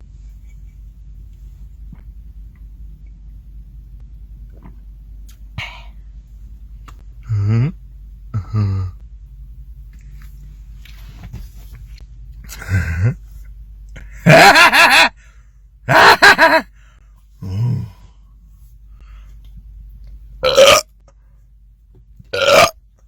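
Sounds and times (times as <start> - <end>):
man belching: 7.2 - 9.0, 20.4 - 20.9, 22.4 - 22.8.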